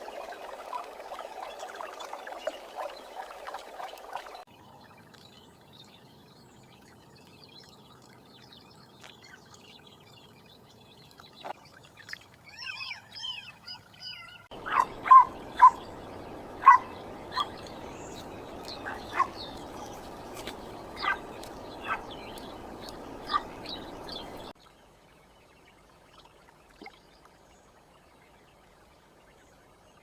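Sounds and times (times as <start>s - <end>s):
small birds twittering: 0.0s - 24.6s
dog barking: 14.5s - 24.5s
steady background hiss: 14.5s - 24.5s.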